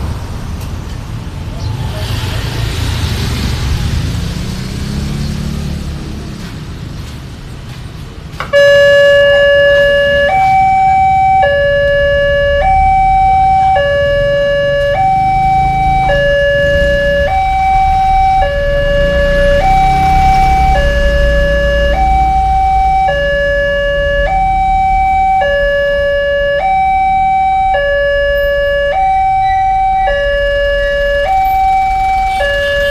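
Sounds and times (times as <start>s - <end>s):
road traffic rumble: 0.0s - 32.9s
two-tone crossing siren: 8.4s - 32.9s.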